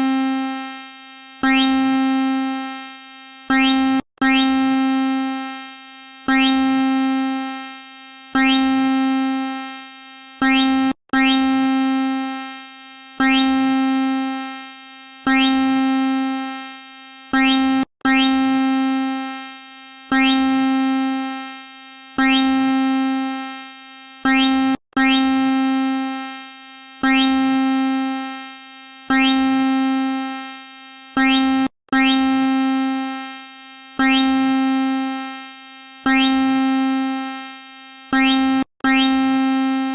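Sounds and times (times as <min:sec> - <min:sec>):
synthesized alarm tone: 0:01.4 - 0:02.4, 0:03.5 - 0:04.9, 0:06.3 - 0:07.0, 0:08.4 - 0:08.9, 0:10.4 - 0:11.8, 0:13.2 - 0:13.8, 0:15.3 - 0:16.0, 0:17.4 - 0:18.6, 0:20.1 - 0:20.7, 0:22.2 - 0:22.8, 0:24.3 - 0:25.5, 0:27.0 - 0:27.8, 0:29.1 - 0:29.8, 0:31.2 - 0:32.7, 0:34.0 - 0:34.9, 0:36.1 - 0:37.2, 0:38.1 - 0:39.9.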